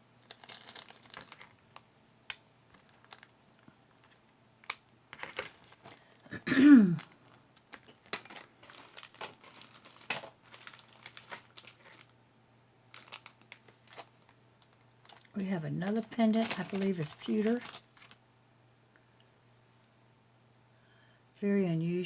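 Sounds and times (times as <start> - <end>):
packaging crinkling: 0.2 - 12.2, 12.9 - 18.2.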